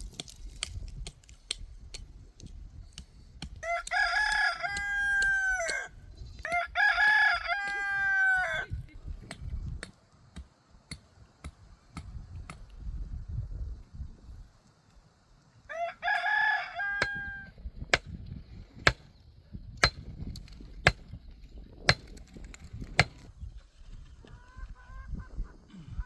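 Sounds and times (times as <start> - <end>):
rooster crowing: 3.6 - 8.8, 15.7 - 17.5.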